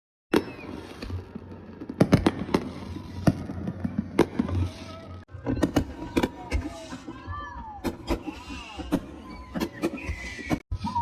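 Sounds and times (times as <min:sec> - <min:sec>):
fireworks crackling: 0:00.3 - 0:10.6
fireworks bangs: 0:00.3 - 0:11.0.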